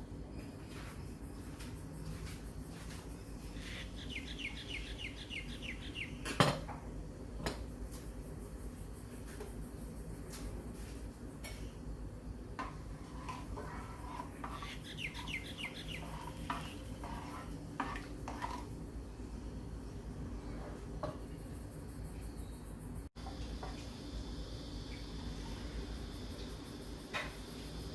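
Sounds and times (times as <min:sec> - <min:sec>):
steady low hum: 0:00.0 - 0:27.9
bird chirps: 0:03.6 - 0:06.3, 0:14.6 - 0:16.9
metal utensil scraping a pan: 0:12.6 - 0:18.7.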